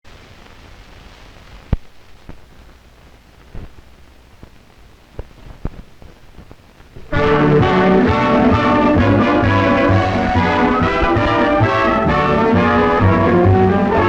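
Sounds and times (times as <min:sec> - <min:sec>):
film soundtrack hiss and hum: 0:00.1 - 0:14.0.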